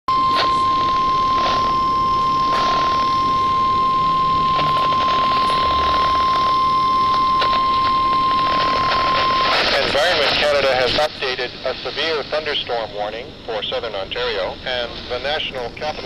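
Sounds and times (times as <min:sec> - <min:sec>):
continuous warning alarm beep: 0:00.1 - 0:11.4
crackling radio static: 0:00.1 - 0:16.0.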